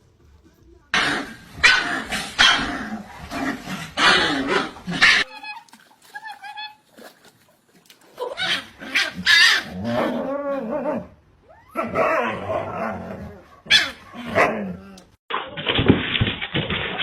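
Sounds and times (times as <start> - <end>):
dog barking: 1.0 - 2.8, 13.5 - 14.6.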